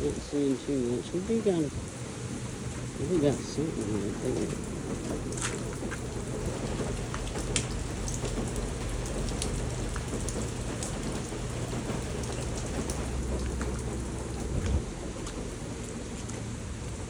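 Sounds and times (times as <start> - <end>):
raindrops ticking close by: 0.0 - 17.0
steady rain falling: 0.0 - 17.0
low rumble: 11.7 - 17.0.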